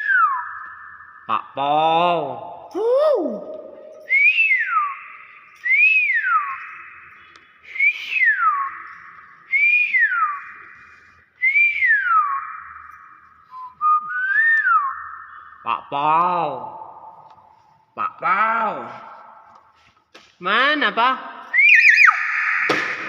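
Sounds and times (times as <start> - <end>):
myna whistling: 2.8 - 15.6, 21.5 - 22.7.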